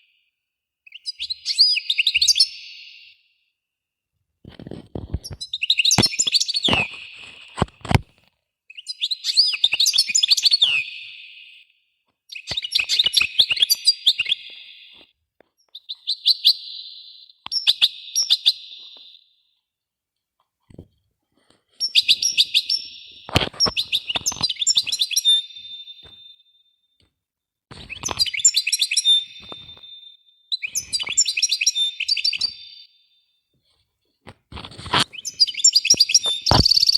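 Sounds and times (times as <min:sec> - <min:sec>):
small birds chirping: 0:00.8 - 0:03.4, 0:04.7 - 0:08.0, 0:08.7 - 0:19.5, 0:21.6 - 0:26.4, 0:27.7 - 0:33.2, 0:34.6 - 0:36.9.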